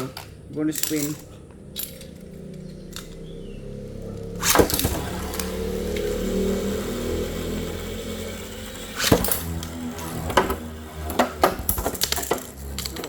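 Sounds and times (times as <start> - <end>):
spinning tops whirring rattle: 4.2 - 13.0.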